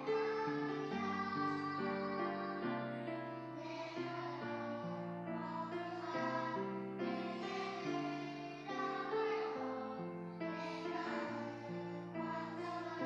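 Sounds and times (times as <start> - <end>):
children's choir singing: 0.0 - 13.0.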